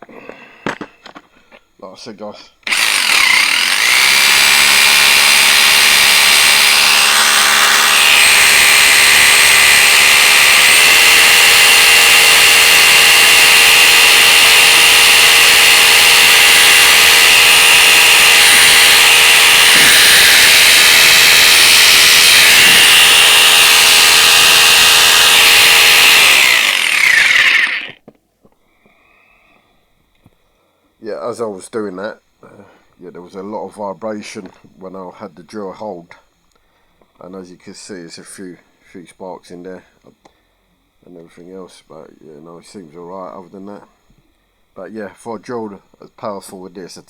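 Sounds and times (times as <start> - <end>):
rotary hammer drill running: 2.6 - 28.0.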